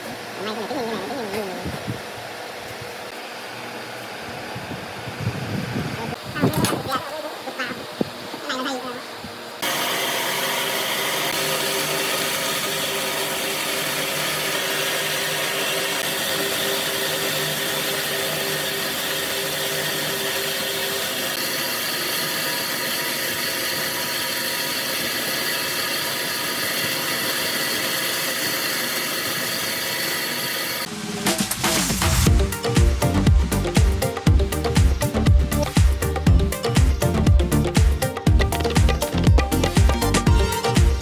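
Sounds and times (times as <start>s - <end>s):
power tool whirring: 9.6s - 32.8s.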